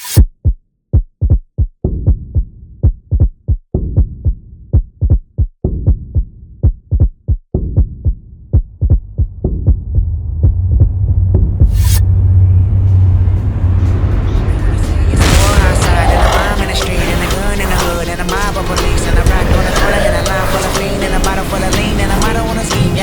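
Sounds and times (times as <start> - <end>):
deep heartbeat thumps: 0.2 - 20.3
low hum: 8.6 - 23.0.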